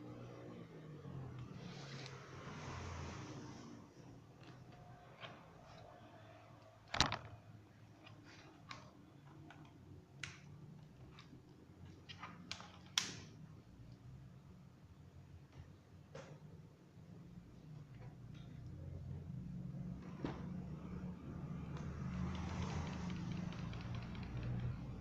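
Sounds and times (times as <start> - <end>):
plastic laptop case clicks and taps: 6.9 - 7.3.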